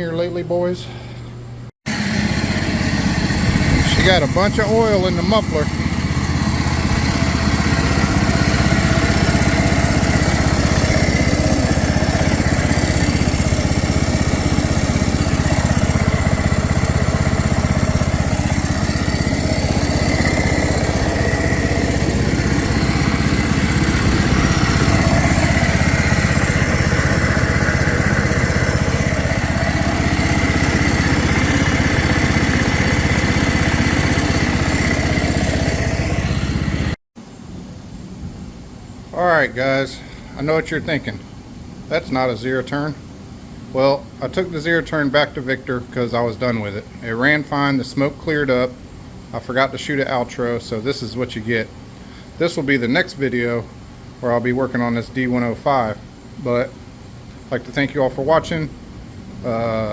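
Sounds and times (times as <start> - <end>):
lawn mower engine running: 1.9 - 37.0.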